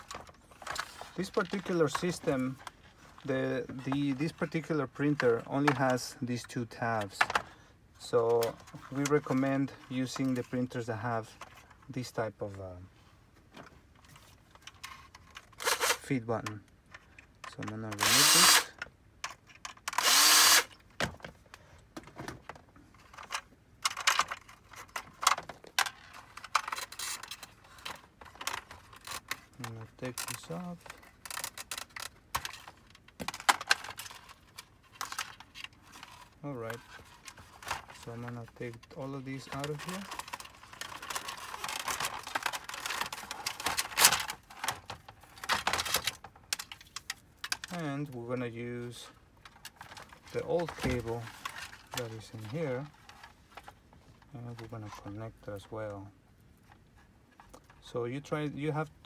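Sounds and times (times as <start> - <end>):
plastic parts clicking and rattling: 0.0 - 12.7, 13.5 - 59.0
electric screwdriver whirring: 18.0 - 18.8, 20.0 - 20.7.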